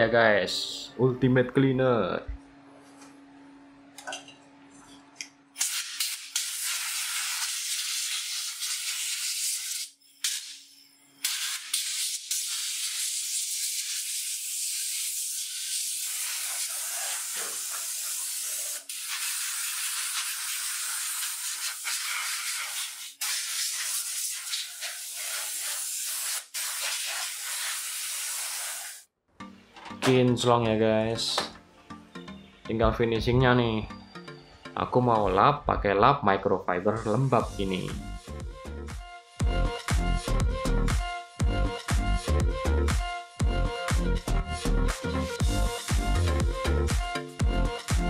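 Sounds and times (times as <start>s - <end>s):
air blow gun hissing: 5.6s - 10.6s, 11.2s - 29.1s.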